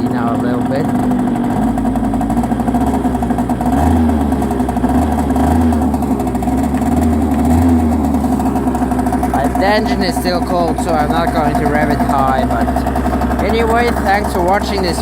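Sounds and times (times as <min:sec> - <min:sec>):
scooter engine idling: 0:00.0 - 0:15.0.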